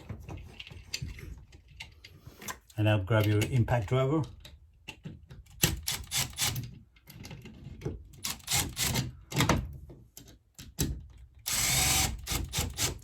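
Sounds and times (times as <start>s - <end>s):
handling clicks and knocks: 0.0s - 5.9s.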